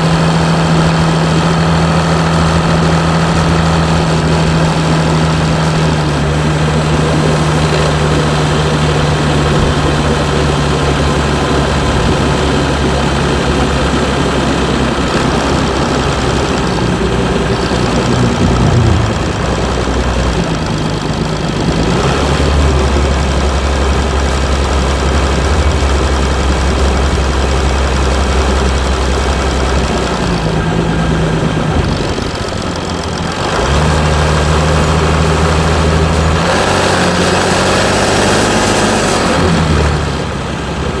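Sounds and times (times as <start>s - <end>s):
diesel engine droning: 0.0s - 41.0s.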